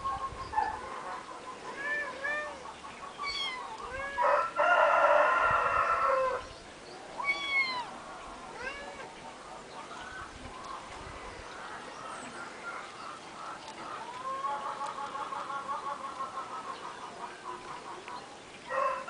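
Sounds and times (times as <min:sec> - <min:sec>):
kittens mewing: 0:03.2 - 0:04.2, 0:07.2 - 0:09.1
rooster crowing: 0:04.2 - 0:06.4, 0:18.7 - 0:19.0.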